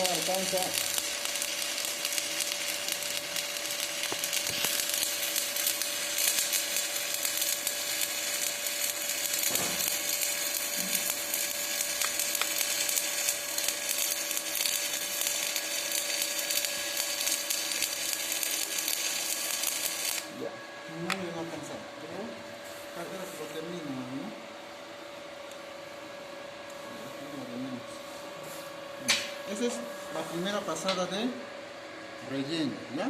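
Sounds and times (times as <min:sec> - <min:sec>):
welding arc crackling: 0:00.0 - 0:20.4
steady hum: 0:00.0 - 0:33.0.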